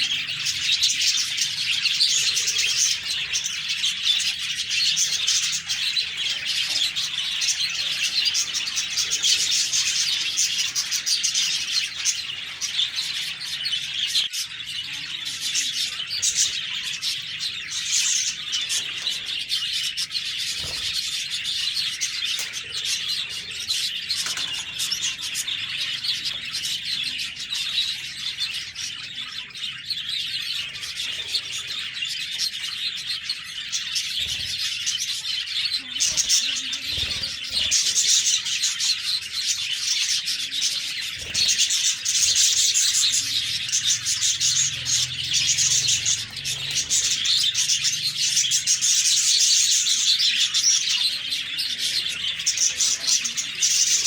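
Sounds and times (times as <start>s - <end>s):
budgerigars chattering: 0.0s - 54.0s.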